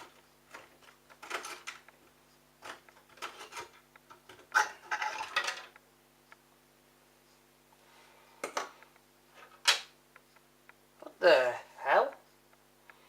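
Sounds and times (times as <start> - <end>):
hard plastic clattering and scraping: 0.0 - 1.9, 2.6 - 5.8.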